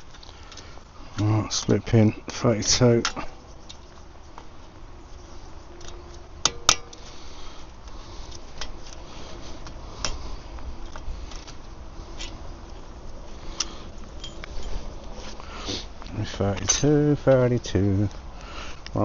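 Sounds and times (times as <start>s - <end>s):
steel tools clinking: 13.6s - 14.9s.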